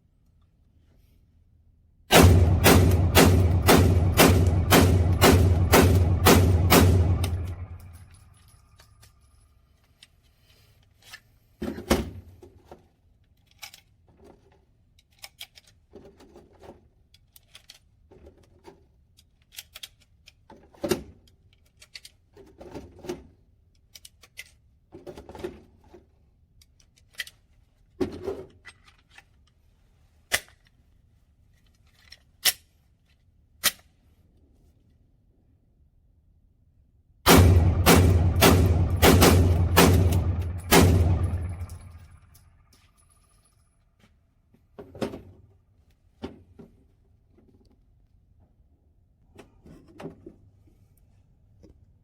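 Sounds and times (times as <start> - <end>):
sharp loud cracks: 2.1 - 8.1, 37.3 - 42.7
scattered clicks and knocks: 2.5 - 9.1, 37.5 - 43.1.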